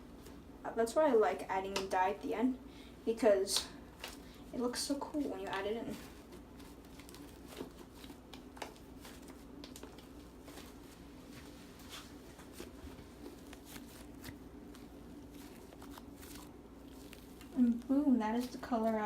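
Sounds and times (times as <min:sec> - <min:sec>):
steady low hum: 0:00.0 - 0:19.0
slime crackles and squishes: 0:04.8 - 0:19.0.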